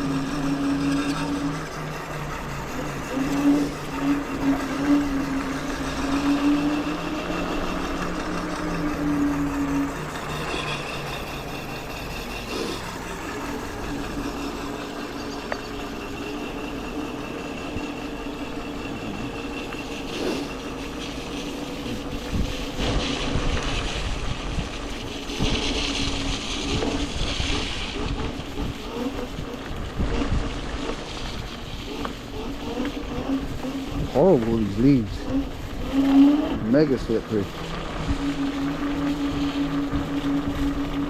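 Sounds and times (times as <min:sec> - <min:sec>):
brake disc rubbing drone: 0:00.0 - 0:41.0
wind noise on microphone: 0:21.5 - 0:41.0.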